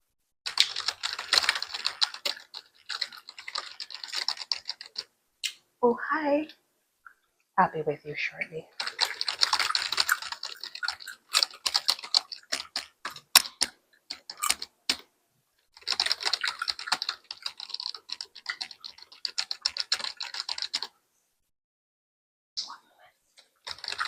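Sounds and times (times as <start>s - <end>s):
typing on computer keyboard: 0.5s - 5.1s, 8.7s - 15.1s, 15.8s - 20.9s, 23.4s - 24.0s.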